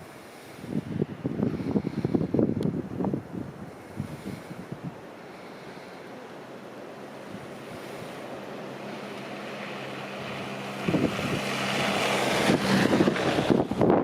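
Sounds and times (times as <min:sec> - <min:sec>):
tyre hiss on snowy road: 0:00.0 - 0:02.5, 0:03.7 - 0:13.5
wind on microphone: 0:00.0 - 0:05.0, 0:10.4 - 0:14.0
vehicle engine hum: 0:00.0 - 0:14.0.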